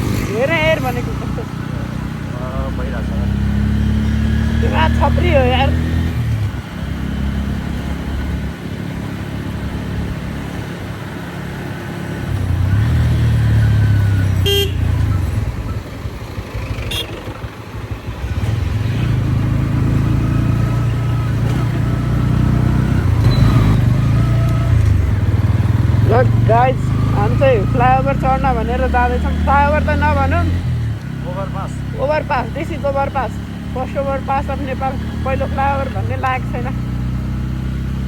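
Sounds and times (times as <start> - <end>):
motorcycle engine running: 0.0 - 38.0
vehicle horn toot: 14.4 - 15.1, 16.9 - 17.3.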